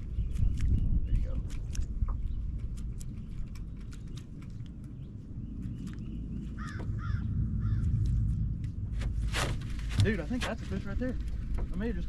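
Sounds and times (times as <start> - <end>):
low rumble: 0.0 - 12.0
crow cawing: 6.6 - 7.9.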